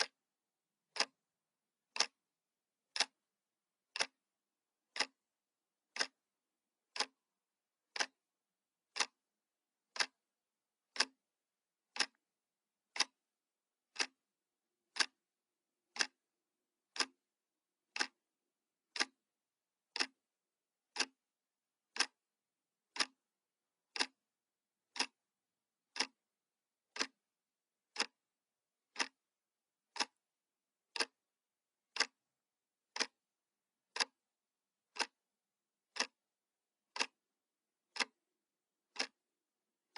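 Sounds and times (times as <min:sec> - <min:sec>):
clock ticking: 0:00.0 - 0:00.2, 0:00.8 - 0:01.2, 0:01.8 - 0:02.2, 0:02.9 - 0:07.3, 0:07.9 - 0:08.3, 0:08.9 - 0:09.3, 0:09.9 - 0:11.3, 0:11.9 - 0:12.2, 0:12.8 - 0:13.2, 0:13.8 - 0:14.2, 0:14.9 - 0:15.2, 0:15.9 - 0:16.2, 0:16.9 - 0:17.2, 0:17.9 - 0:18.2, 0:18.9 - 0:19.3, 0:19.9 - 0:20.3, 0:20.9 - 0:21.2, 0:21.8 - 0:24.3, 0:24.9 - 0:25.3, 0:25.9 - 0:26.3, 0:26.9 - 0:27.2, 0:27.9 - 0:29.3, 0:29.9 - 0:30.2, 0:30.9 - 0:31.3, 0:31.9 - 0:32.3, 0:32.9 - 0:33.2, 0:33.9 - 0:36.3, 0:36.9 - 0:37.3, 0:37.9 - 0:38.3, 0:38.9 - 0:39.3.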